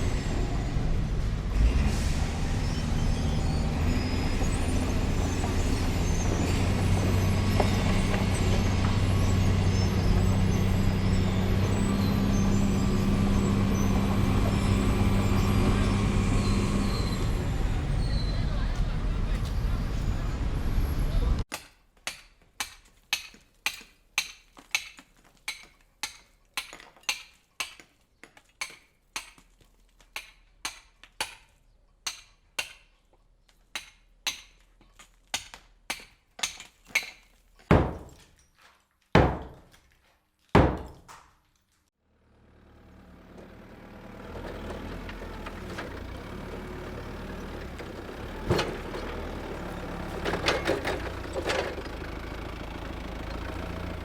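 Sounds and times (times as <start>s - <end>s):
metal clanks: 44.4s - 52.0s.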